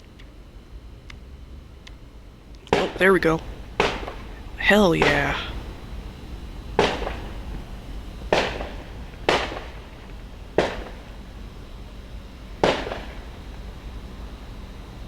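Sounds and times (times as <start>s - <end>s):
fireworks bangs: 2.7s - 14.3s.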